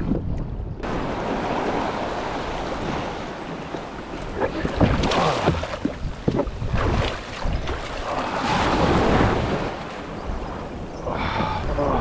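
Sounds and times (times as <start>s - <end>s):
wind on microphone: 0.0s - 1.6s, 4.2s - 12.0s
water splashing around kayak: 0.0s - 12.0s.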